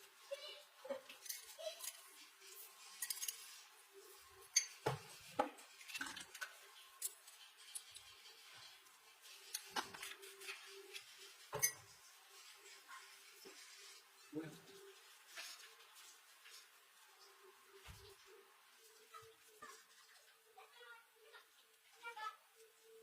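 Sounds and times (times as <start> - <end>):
kitchenware clinking: 4.5 - 8.3.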